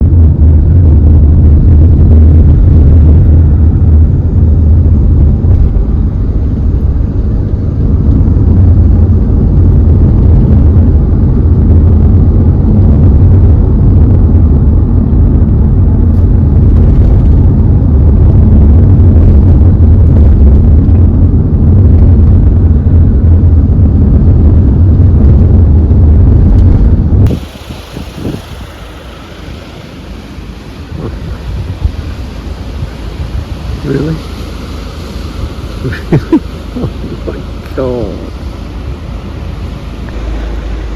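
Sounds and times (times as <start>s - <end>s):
vehicle rumbling along a road: 0.0s - 40.9s.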